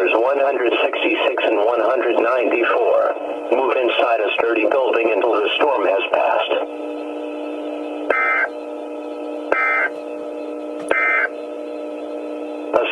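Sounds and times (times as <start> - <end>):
steady radio buzz: 0.0 - 12.9
screechy digital data bursts: 8.1 - 8.5, 10.9 - 11.3.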